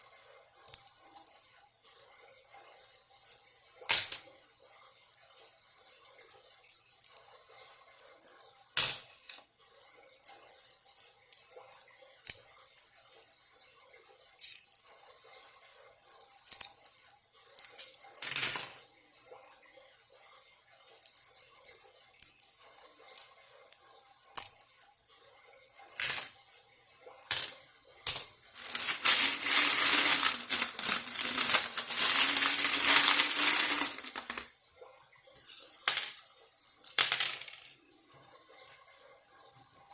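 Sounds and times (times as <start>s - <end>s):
coins clinking: 0.0s - 4.3s, 5.0s - 7.3s, 8.0s - 13.8s, 14.4s - 19.6s, 21.0s - 25.1s, 25.7s - 26.4s, 27.3s - 34.5s, 35.5s - 37.7s.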